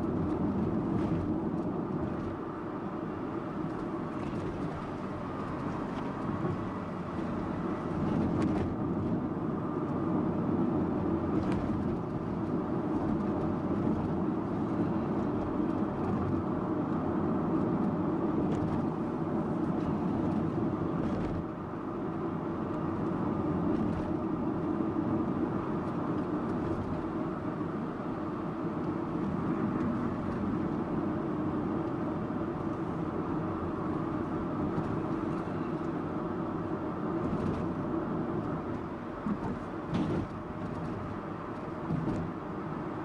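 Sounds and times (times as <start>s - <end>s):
car engine while driving: 0.0s - 43.0s
tyre and road noise: 0.0s - 43.0s.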